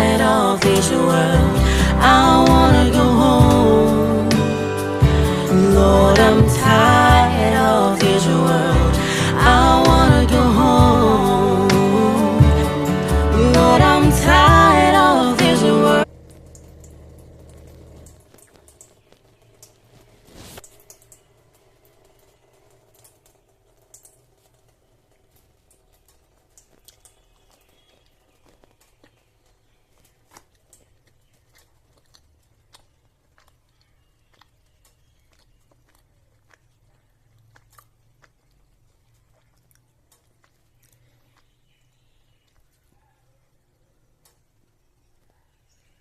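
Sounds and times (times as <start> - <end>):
steady low hum: 0.0 - 18.3.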